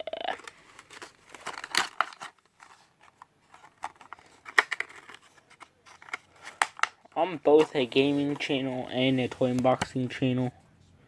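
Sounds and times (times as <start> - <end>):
plastic and cardboard packaging crinkles: 0.2 - 7.7
packaging snap: 0.4 - 2.4, 5.9 - 7.0.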